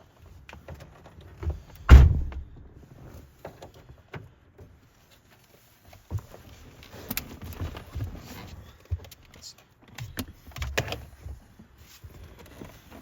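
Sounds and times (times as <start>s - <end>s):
handling thumps and clicks: 1.9s - 2.7s.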